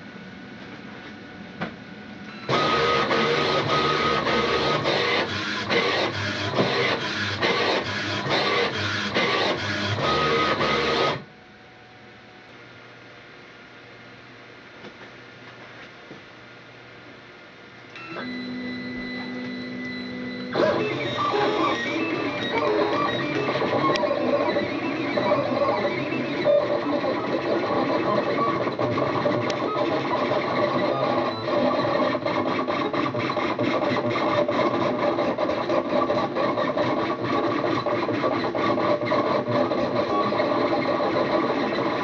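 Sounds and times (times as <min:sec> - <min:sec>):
stepper motors whining: 0:02.3 - 0:11.2, 0:18.0 - 0:33.2.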